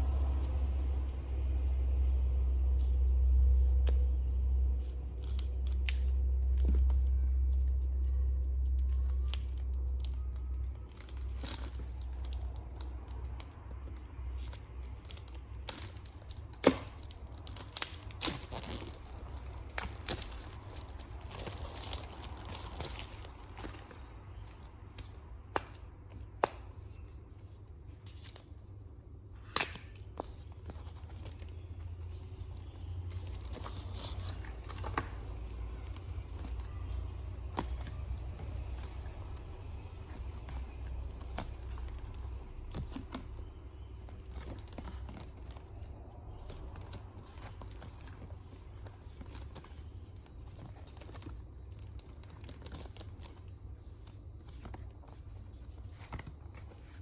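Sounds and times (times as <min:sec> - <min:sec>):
steady low hum: 0:00.0 - 0:57.0
paper rustling and tearing: 0:14.8 - 0:25.2.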